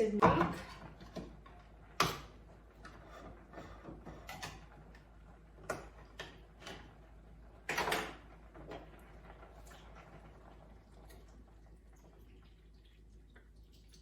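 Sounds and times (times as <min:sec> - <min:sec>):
kitchen clicks and knocks: 0:00.0 - 0:01.4, 0:02.0 - 0:05.0, 0:05.6 - 0:07.0, 0:07.6 - 0:08.9.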